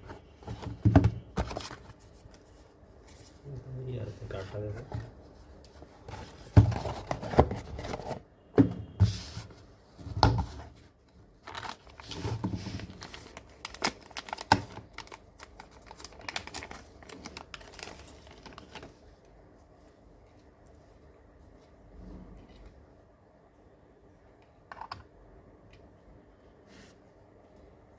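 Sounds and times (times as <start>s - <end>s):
packaging crinkling and rustling: 6.0s - 8.2s, 11.1s - 19.2s.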